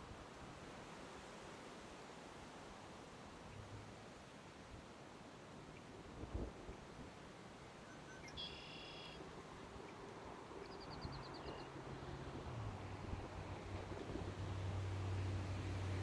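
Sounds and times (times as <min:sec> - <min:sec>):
birds calling faintly: 0:07.8 - 0:12.8
low steady hum: 0:08.0 - 0:16.0.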